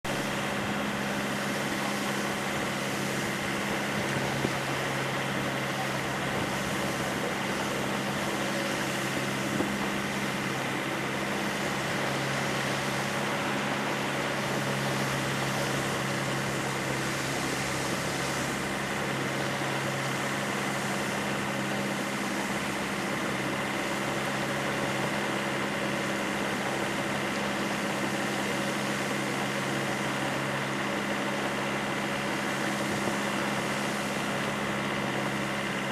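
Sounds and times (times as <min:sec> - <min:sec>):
machine hum with constant tones: 0:00.0 - 0:35.9.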